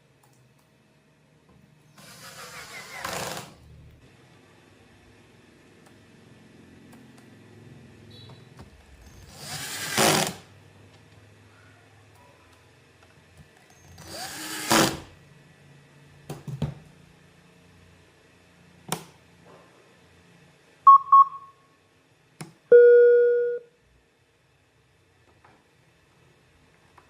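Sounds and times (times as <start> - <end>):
speaker beeps and tone: 20.9 - 21.5, 22.7 - 23.6.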